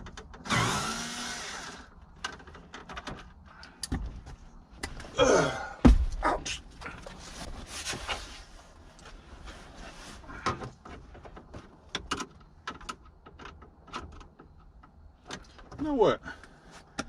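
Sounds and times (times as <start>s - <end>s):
rustling: 6.8s - 11.9s.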